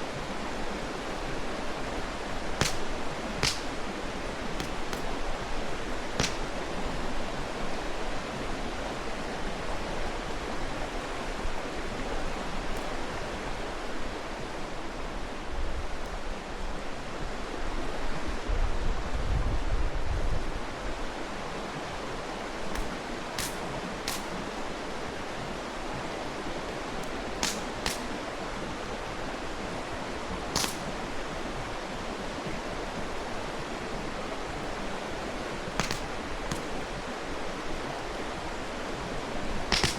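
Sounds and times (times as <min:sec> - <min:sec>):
stream rushing: 0:00.0 - 0:19.1, 0:20.5 - 0:39.9
campfire pops: 0:02.6 - 0:07.0, 0:22.7 - 0:24.6, 0:27.0 - 0:28.2, 0:30.5 - 0:31.1, 0:35.7 - 0:37.0, 0:39.4 - 0:39.9.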